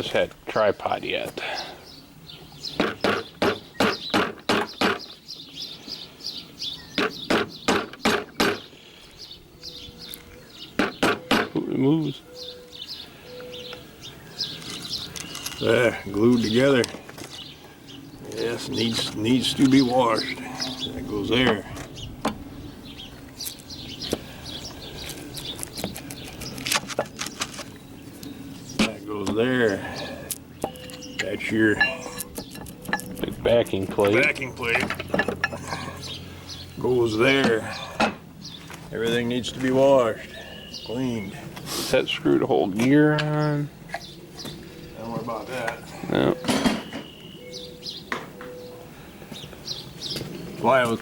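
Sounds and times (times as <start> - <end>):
metal parts clinking: 30.6 - 33.3
sharp tapping on metal plates: 31.8 - 35.9.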